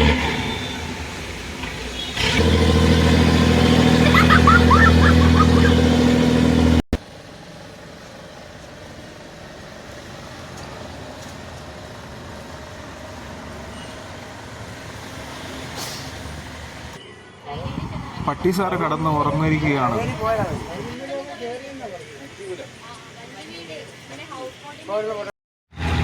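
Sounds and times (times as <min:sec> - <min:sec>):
engine running steadily: 0:01.2 - 0:12.5.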